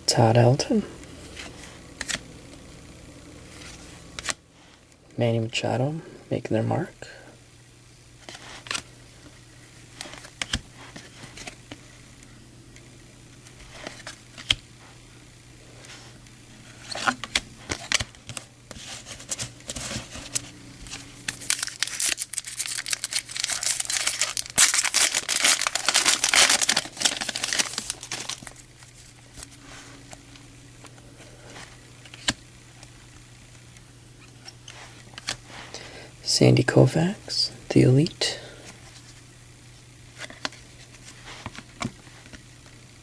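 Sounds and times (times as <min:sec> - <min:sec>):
foil wrapper tearing and crinkling: 0:19.0 - 0:29.5.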